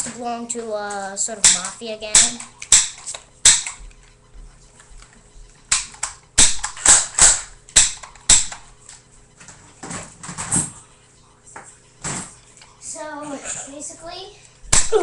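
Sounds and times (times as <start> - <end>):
airsoft gun shots: 1.4 - 3.8, 5.7 - 8.6, 14.7 - 15.0.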